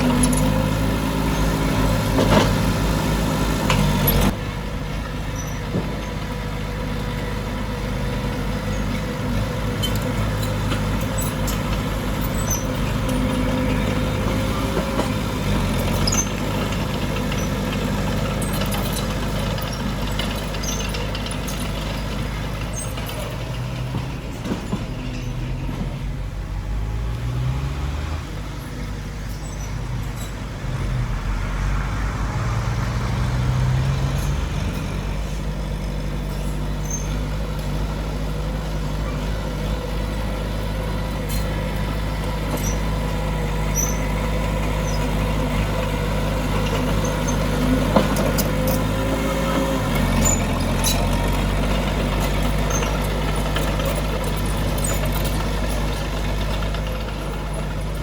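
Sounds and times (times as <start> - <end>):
diesel machinery engine revving: 0.0 - 58.0.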